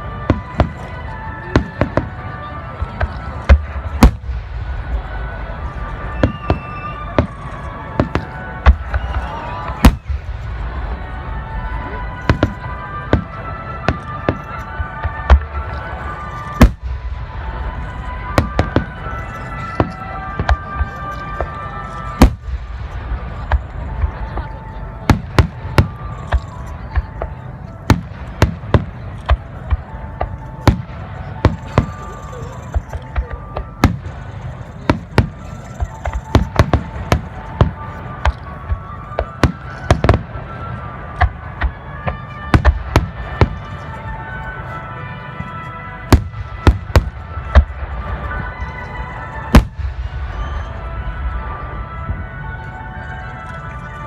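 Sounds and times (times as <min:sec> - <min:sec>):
fireworks bursting: 0:00.0 - 0:44.2, 0:45.4 - 0:52.3.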